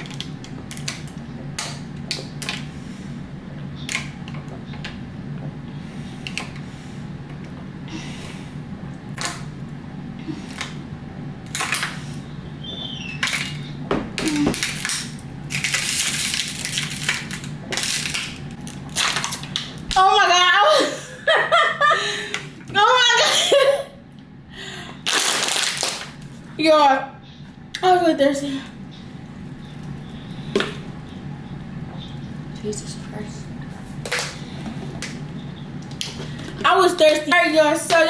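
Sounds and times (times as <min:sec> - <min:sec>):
plastic bottle crinkling: 0:25.0 - 0:26.3.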